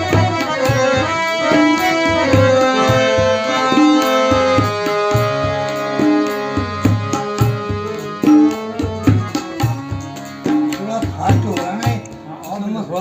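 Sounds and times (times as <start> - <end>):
harmonium chords and melody: 0.0 - 13.0
tabla drumming: 0.0 - 13.0.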